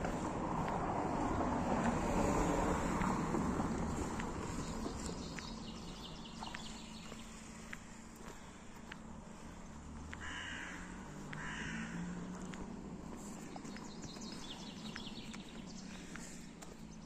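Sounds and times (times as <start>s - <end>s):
faint footsteps: 0.0s - 17.0s
harsh caw-like bird calls: 9.4s - 12.4s.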